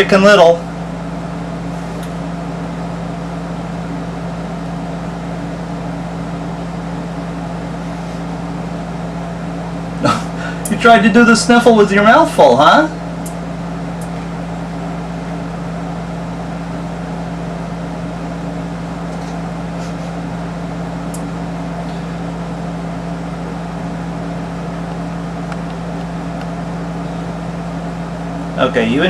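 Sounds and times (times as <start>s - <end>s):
mechanical hum: 0.0s - 29.0s.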